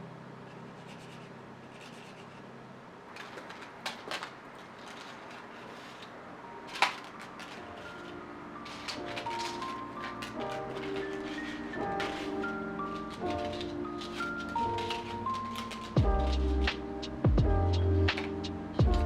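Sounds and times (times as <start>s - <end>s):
soft background music: 4.9s - 19.0s.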